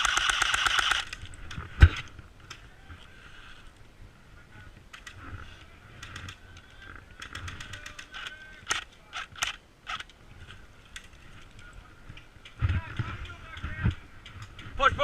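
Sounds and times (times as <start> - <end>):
airsoft guns firing: 0.0 - 1.2.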